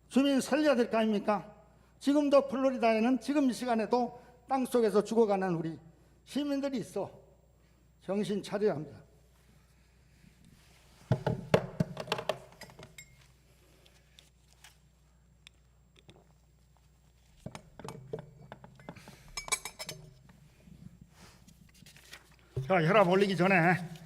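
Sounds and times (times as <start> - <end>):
faint low hum: 0.0 - 24.0
knocks and clinks: 12.2 - 13.2, 17.8 - 20.2.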